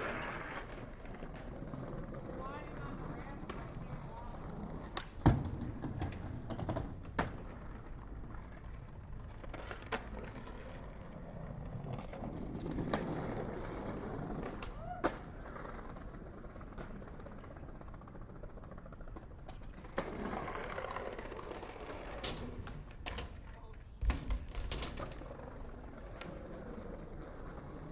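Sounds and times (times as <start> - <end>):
skateboard clacks: 0.0 - 27.9
skateboard wheels rolling on pavement: 0.0 - 27.9.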